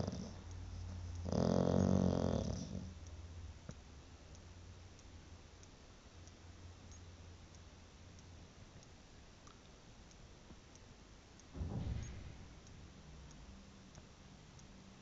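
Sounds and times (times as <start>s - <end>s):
pet snoring: 0.0s - 3.0s
faint regular ticks: 0.0s - 11.5s, 12.6s - 15.0s.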